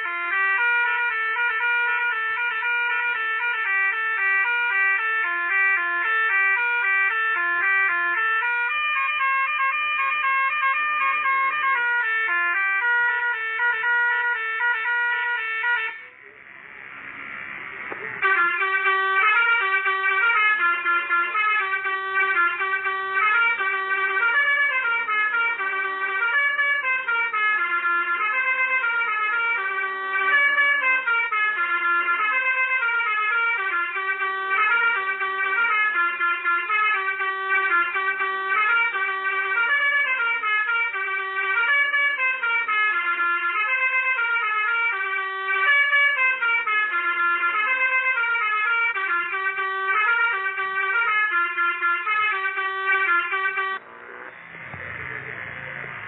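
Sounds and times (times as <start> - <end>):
multi-tone motorcycle horn tune: 17.8 - 56.0.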